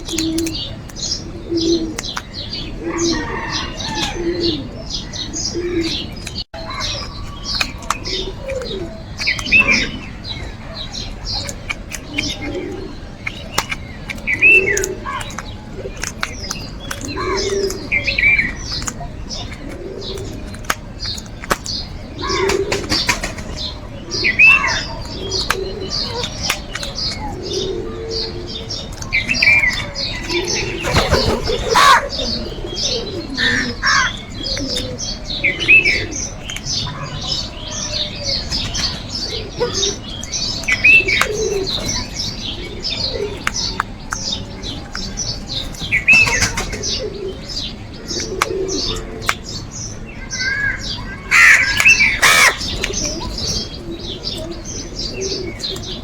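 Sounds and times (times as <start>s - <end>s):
low calls: 0.0s - 56.0s
small birds chirping: 0.0s - 56.0s
crows calling: 2.8s - 6.0s, 24.1s - 43.8s, 50.2s - 54.6s.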